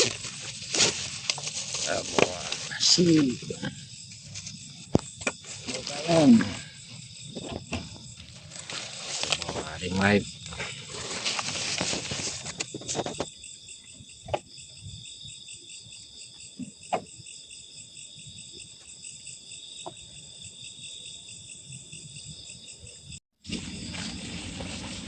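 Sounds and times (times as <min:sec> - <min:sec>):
rustling handling noise: 0:00.0 - 0:03.5, 0:08.0 - 0:13.2
crickets trilling: 0:00.0 - 0:25.0.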